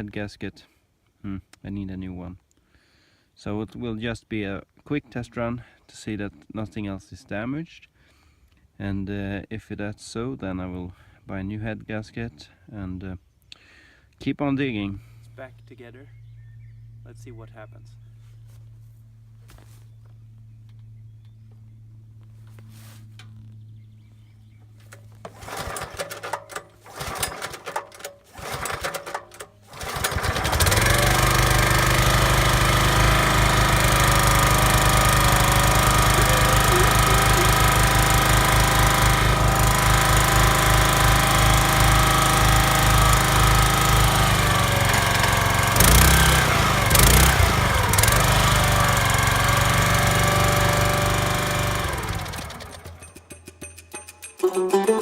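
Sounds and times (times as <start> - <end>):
small engine cranking: 24.9 - 55.0
small engine running: 25.0 - 53.4.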